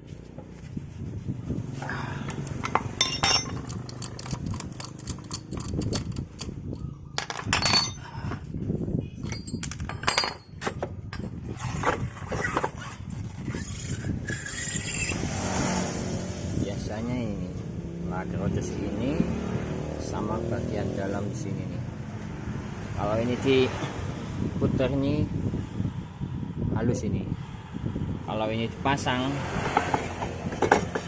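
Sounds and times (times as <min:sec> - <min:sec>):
metal tools clinking and knocking: 0:02.5 - 0:08.5, 0:09.2 - 0:11.3, 0:29.9 - 0:31.0.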